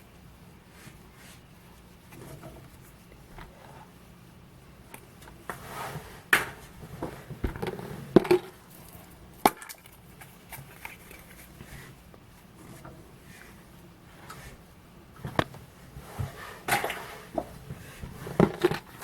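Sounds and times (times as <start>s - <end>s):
rustle of wrapper: 8.7s - 12.0s.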